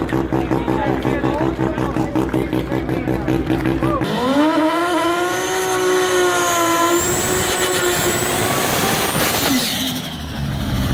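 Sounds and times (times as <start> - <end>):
racing car engine at high revs: 0.0 - 10.9.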